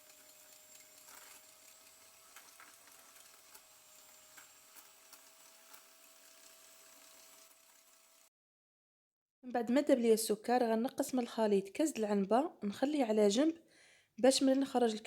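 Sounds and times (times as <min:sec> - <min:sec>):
electric hand mixer running: 0:00.0 - 0:08.3.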